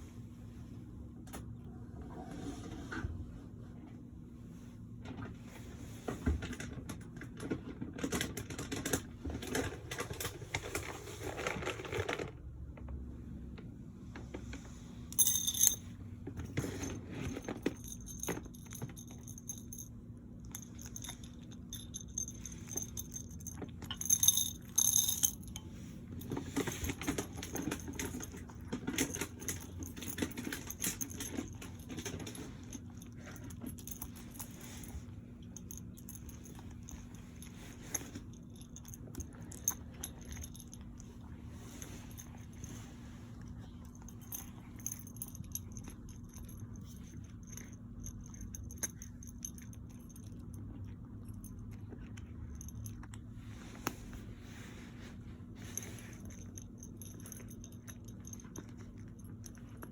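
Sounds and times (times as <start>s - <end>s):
small clicks and rustles: 6.1s - 13.0s, 20.5s - 59.9s
steady low hum: 12.4s - 59.9s
metallic jingling: 15.2s - 15.9s, 20.5s - 25.6s.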